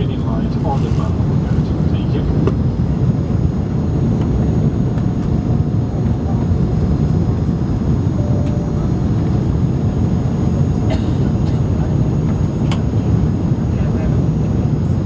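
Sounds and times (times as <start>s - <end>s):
airliner cabin engine rumble: 0.0s - 15.0s.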